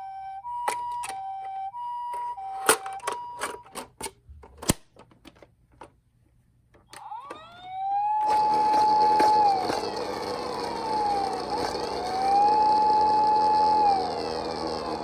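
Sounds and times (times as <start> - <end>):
two-tone toy siren: 0.0 - 3.8, 6.9 - 15.0
wailing toy siren: 0.0 - 3.8, 6.9 - 15.0.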